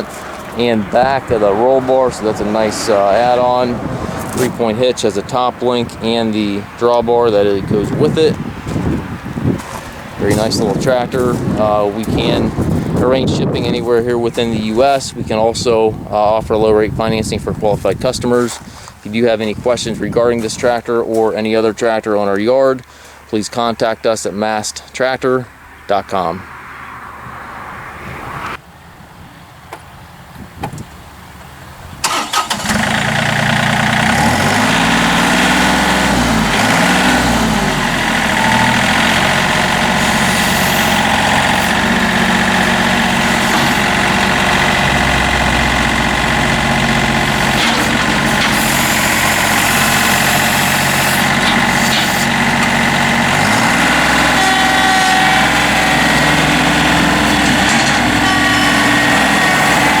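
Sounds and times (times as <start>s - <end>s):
diesel engine running: 0.0s - 21.2s, 31.4s - 60.0s
diesel engine cranking and starting: 0.0s - 22.0s, 31.2s - 60.0s.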